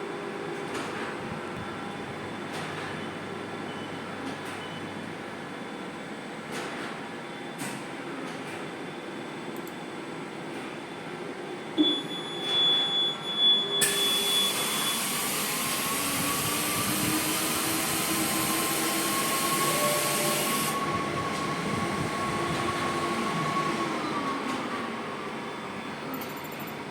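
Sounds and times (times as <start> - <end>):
printing machine running: 13.8 - 26.0
strong hiss: 15.2 - 20.8.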